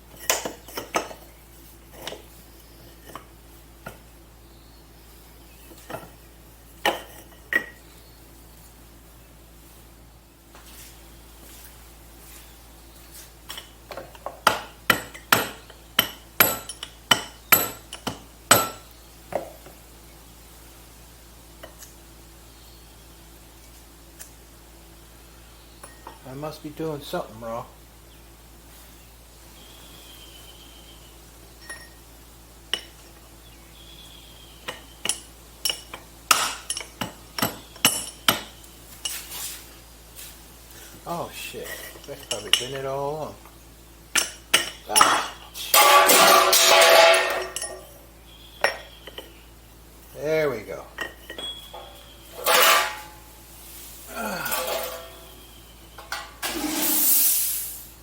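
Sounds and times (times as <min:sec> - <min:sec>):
metal tools tapping on metal: 0:06.8 - 0:07.8, 0:13.5 - 0:19.6, 0:25.8 - 0:26.2, 0:31.6 - 0:32.0, 0:32.7 - 0:33.1, 0:34.6 - 0:39.3, 0:41.6 - 0:42.8, 0:43.4 - 0:48.0, 0:48.6 - 0:49.4, 0:50.9 - 0:53.3, 0:54.4 - 0:57.0
hammer striking metal: 0:44.2 - 0:47.9.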